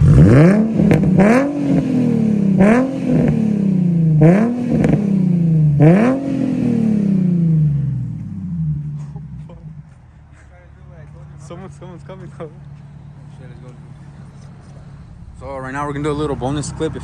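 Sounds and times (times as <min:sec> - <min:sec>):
car engine revving with sharp crack: 0:00.0 - 0:10.0
car engine idling: 0:00.0 - 0:17.0.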